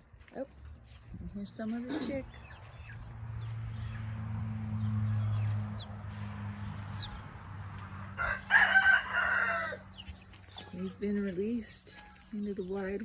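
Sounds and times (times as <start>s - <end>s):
rooster crowing: 8.1s - 10.0s.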